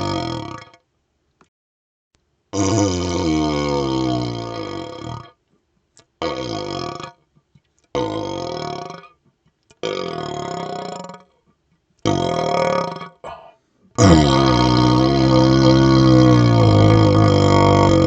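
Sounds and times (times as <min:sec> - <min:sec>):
man burping into a tube: 0:00.0 - 0:00.8, 0:02.6 - 0:05.4, 0:06.2 - 0:07.2, 0:08.0 - 0:09.2, 0:09.8 - 0:11.3, 0:12.0 - 0:18.0.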